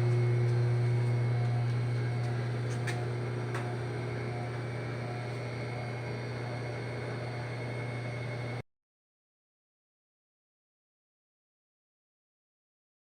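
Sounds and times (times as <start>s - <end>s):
low hum: 0.0s - 8.6s.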